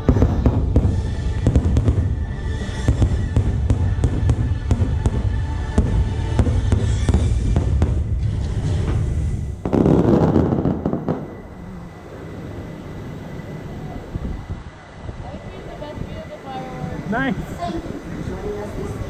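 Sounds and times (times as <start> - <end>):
music playing: 0.0 - 12.4
fireworks cracking and booming: 0.0 - 12.9
low rumble: 0.0 - 17.1.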